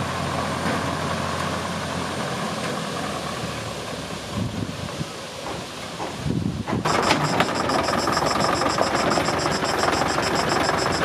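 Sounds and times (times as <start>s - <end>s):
engine running: 0.0s - 4.4s, 6.9s - 11.0s.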